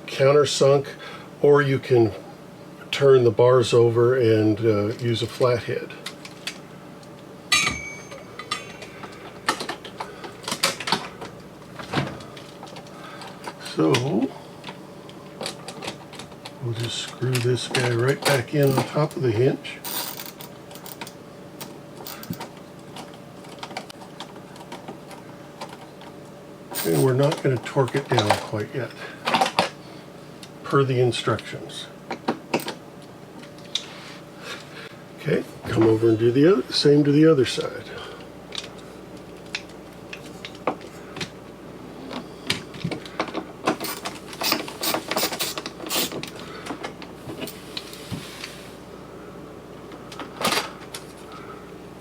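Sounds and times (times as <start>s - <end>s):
faint steady hum: 0.0s - 52.0s
hand tools clicking on metal: 17.4s - 18.9s, 26.8s - 27.4s, 43.7s - 46.4s.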